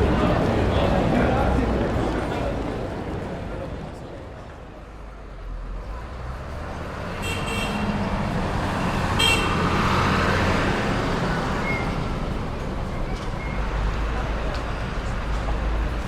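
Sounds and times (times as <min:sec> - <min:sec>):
vehicle passing by: 0:07.8 - 0:12.3.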